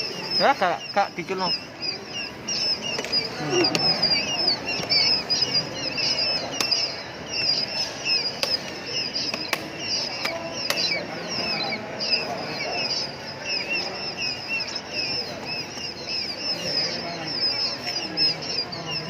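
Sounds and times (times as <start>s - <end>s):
small birds chirping: 0.0s - 19.0s
sharp clicks: 4.7s - 11.0s.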